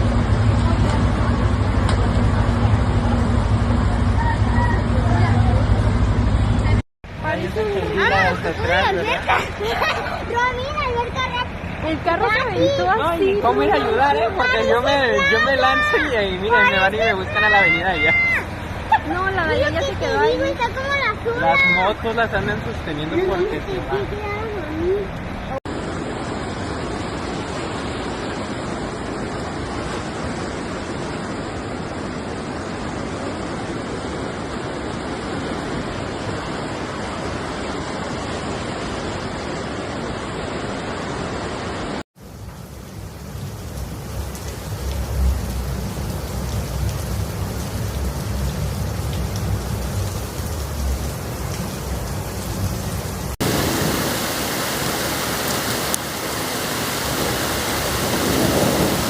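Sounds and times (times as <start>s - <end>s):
heavy rain: 0.0s - 59.0s
rushing floodwater: 0.0s - 59.0s.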